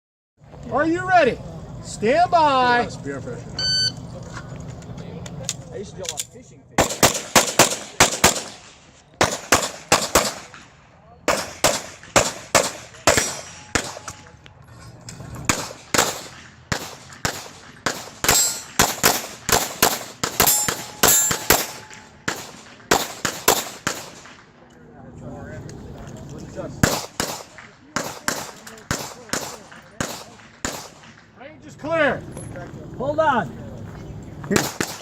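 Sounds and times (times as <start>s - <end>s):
pistol firing rapidly: 6.8s - 8.6s, 9.2s - 10.5s, 11.3s - 14.1s, 15.5s - 24.3s, 26.8s - 31.1s, 34.6s - 35.0s.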